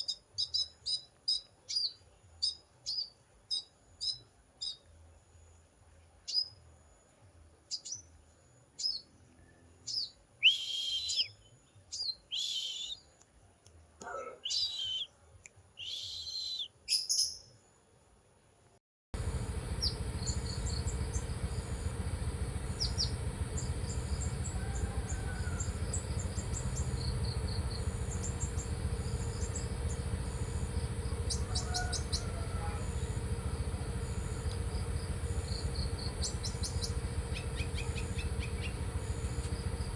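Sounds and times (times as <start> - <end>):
songbird chirping and whistling: 0.0 - 4.8, 6.3 - 6.6, 8.8 - 9.1, 9.9 - 13.2, 14.4 - 15.2, 15.8 - 17.5, 19.8 - 21.3, 22.7 - 24.6
steady hum and hiss: 17.5 - 39.9.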